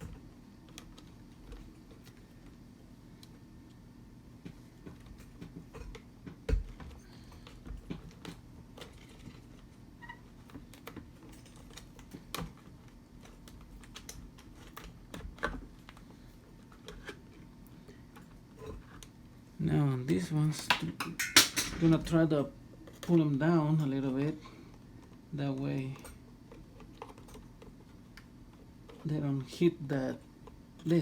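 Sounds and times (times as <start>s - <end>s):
low steady hum: 0.0s - 31.0s.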